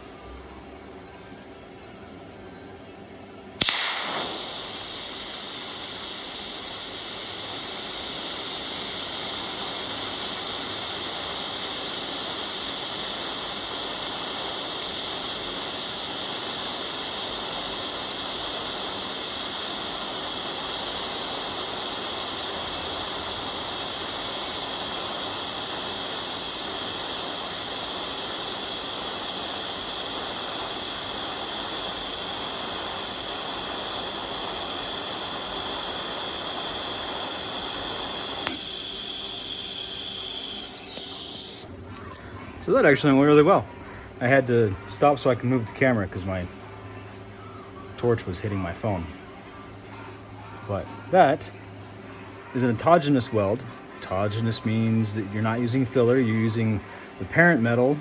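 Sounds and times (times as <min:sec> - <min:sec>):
welding arc crack: 0:03.6 - 0:41.7
welding torch hissing: 0:03.6 - 0:41.7, 0:54.1 - 0:58.0.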